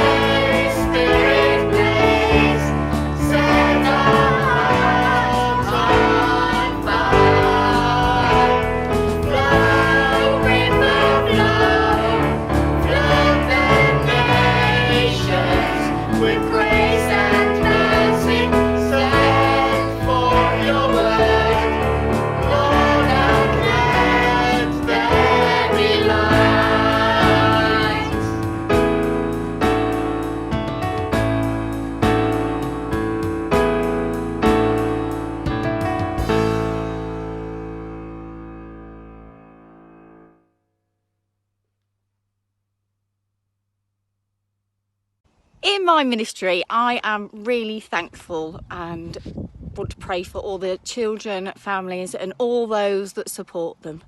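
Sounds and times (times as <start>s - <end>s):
group of voices singing: 0.0s - 28.5s
instrumental backing: 0.0s - 40.3s.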